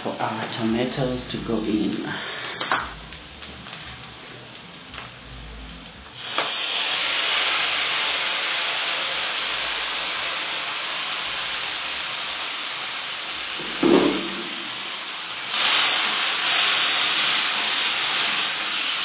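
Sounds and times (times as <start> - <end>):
food sizzling in hot oil: 1.4 - 19.0
short knock: 13.6 - 14.6.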